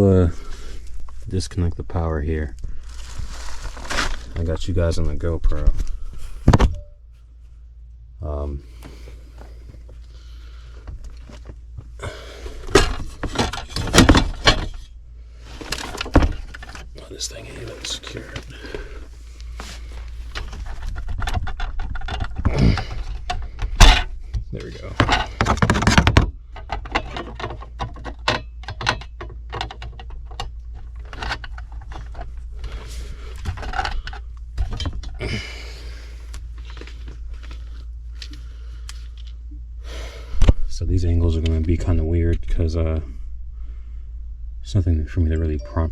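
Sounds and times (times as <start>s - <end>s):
low steady hum: 0.0s - 45.9s
metal rattling and sharp knocks: 12.6s - 14.9s, 20.4s - 24.1s, 24.8s - 32.4s.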